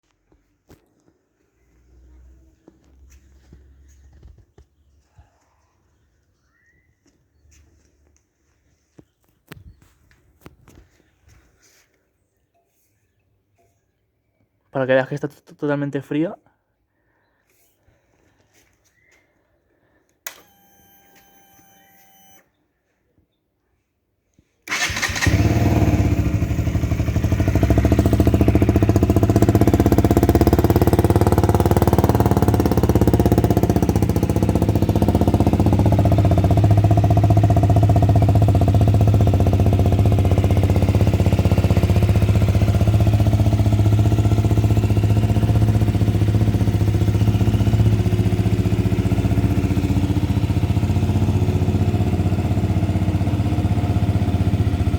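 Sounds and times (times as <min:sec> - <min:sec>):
faint ignition whine: 0:20.1 - 0:22.6
motorcycle engine starting and idling: 0:20.2 - 0:22.5, 0:24.6 - 0:54.9.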